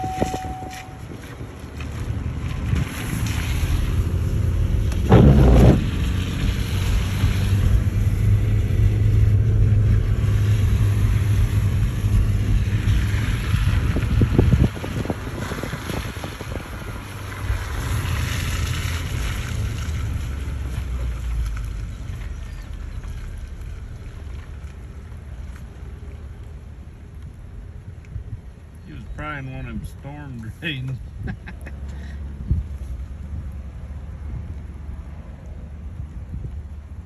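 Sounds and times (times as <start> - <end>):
wind buffeting microphone: 0.0 - 20.4.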